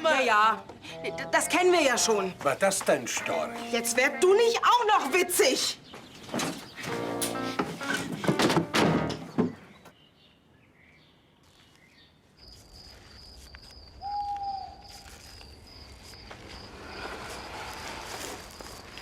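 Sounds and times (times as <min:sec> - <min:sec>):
crickets trilling: 0:12.3 - 0:19.0.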